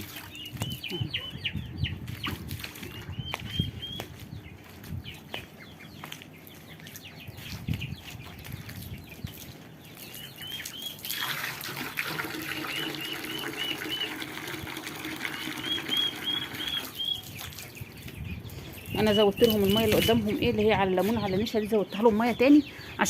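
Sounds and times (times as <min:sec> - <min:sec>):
chicks peeping: 0:00.0 - 0:11.2, 0:12.4 - 0:23.0
water running from a hose: 0:11.0 - 0:17.7.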